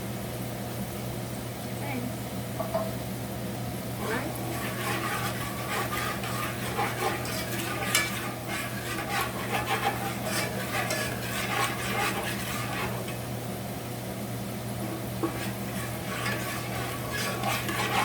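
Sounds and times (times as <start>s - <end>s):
frying sizzle: 0.0s - 18.0s
utensil scraping a pan: 4.0s - 13.4s, 14.7s - 18.0s.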